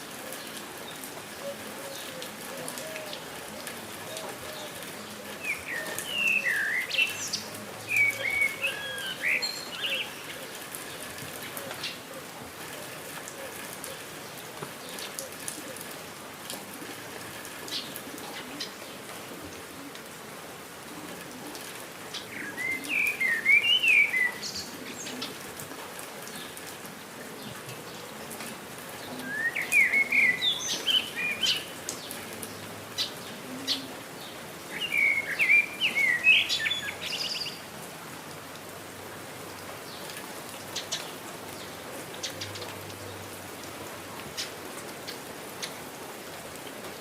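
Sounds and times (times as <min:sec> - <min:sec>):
rain falling: 0:00.0 - 0:47.0
songbird chirping: 0:00.9 - 0:12.0, 0:22.1 - 0:25.4, 0:29.0 - 0:37.7.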